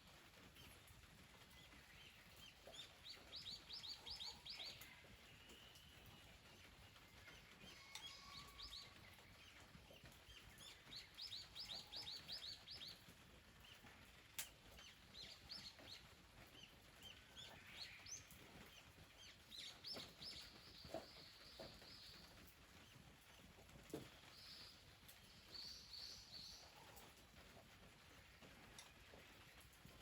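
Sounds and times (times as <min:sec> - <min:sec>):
small birds chirping: 0:00.5 - 0:30.0.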